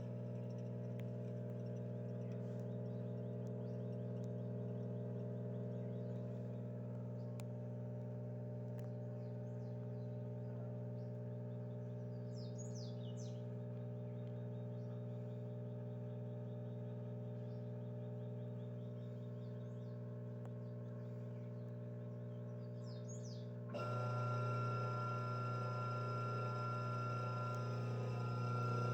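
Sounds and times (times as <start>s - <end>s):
washing machine spinning: 23.7s - 28.9s.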